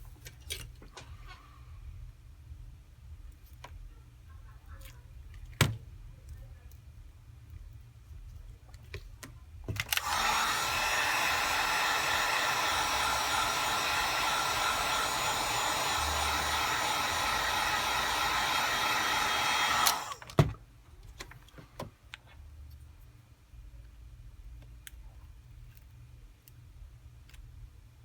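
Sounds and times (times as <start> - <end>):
hot-air blower with fan whine: 9.9 - 20.6.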